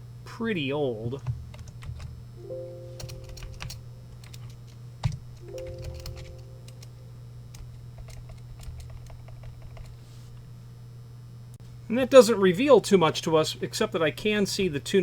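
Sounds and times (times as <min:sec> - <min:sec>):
low electrical hum: 0:00.0 - 0:15.0
brief low chime tone: 0:02.4 - 0:04.0, 0:05.5 - 0:06.9
computer keyboard and mouse clicks: 0:03.0 - 0:06.9, 0:07.6 - 0:10.0.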